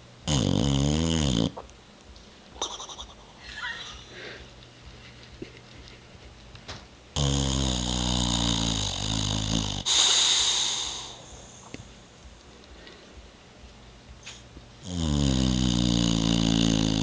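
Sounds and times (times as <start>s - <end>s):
dog snoring: 0.2s - 1.6s, 7.1s - 11.7s, 14.3s - 17.0s.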